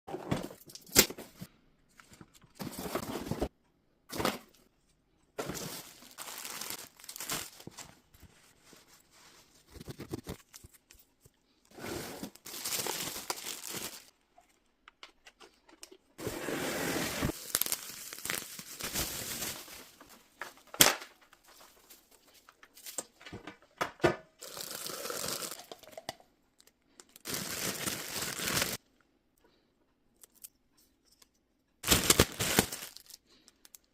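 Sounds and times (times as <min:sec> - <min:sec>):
packaging tearing and crinkling: 0:05.4 - 0:07.8, 0:12.4 - 0:14.1, 0:17.2 - 0:20.0, 0:24.4 - 0:25.6, 0:27.2 - 0:28.8, 0:31.8 - 0:33.8.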